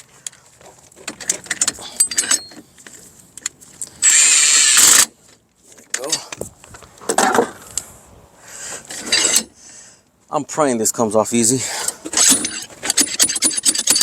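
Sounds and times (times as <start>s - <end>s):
rasping tool bursts: 12.2s - 14.0s.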